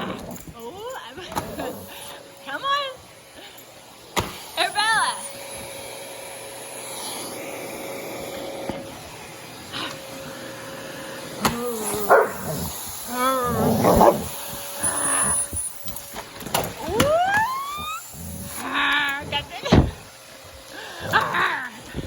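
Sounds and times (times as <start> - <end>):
vacuum cleaner running: 1.2 - 22.0
dog whining barks: 11.5 - 16.0, 16.8 - 20.0.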